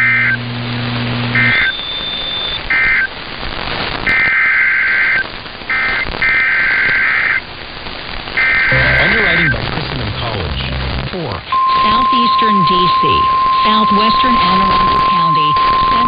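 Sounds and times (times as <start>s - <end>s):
broadcast hiss: 0.0s - 16.0s
two-tone digital data bursts: 1.4s - 3.1s, 8.4s - 9.6s, 11.5s - 16.0s.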